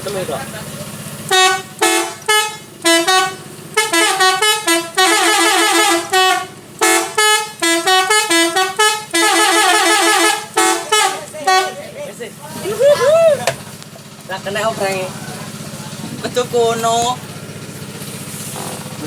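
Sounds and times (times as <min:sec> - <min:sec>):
multi-tone bus horn toots: 0:01.2 - 0:12.1.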